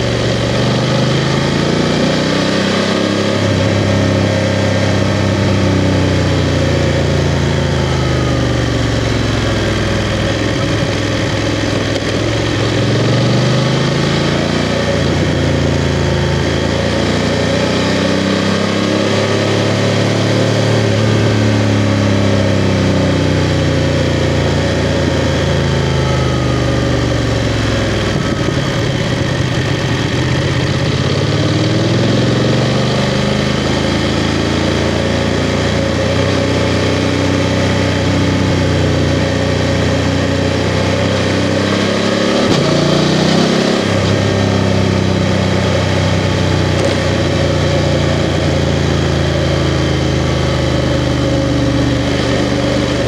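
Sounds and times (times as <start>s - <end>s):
motorcycle engine revs: 0.0s - 53.0s.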